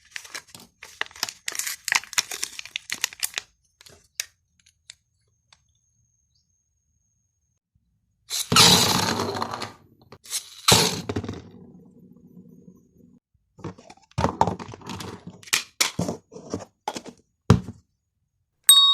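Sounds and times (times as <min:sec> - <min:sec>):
cracking and crunching handling: 0:00.0 - 0:05.0.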